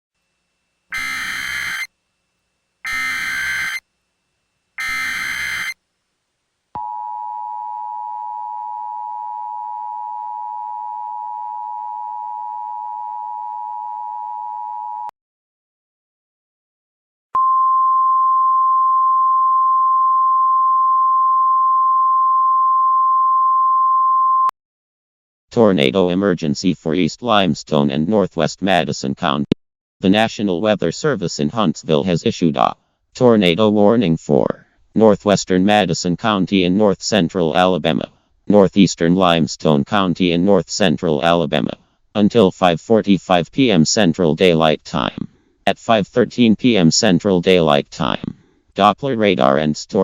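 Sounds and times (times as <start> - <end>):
digital data screech bursts: 0.9 - 1.9, 2.9 - 3.8, 4.8 - 5.8
two-tone attention signal: 0.9 - 1.9, 2.9 - 3.8, 4.8 - 5.8
steady warning alarm tone: 0.9 - 2.0, 2.8 - 3.9, 4.8 - 5.8.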